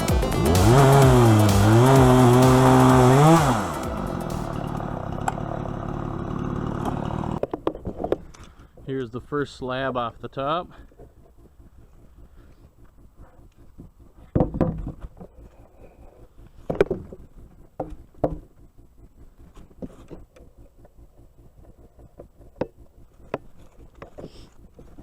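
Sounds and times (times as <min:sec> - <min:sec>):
wooden knocks and thumps: 0:06.9 - 0:08.4, 0:13.8 - 0:15.4, 0:16.6 - 0:18.5.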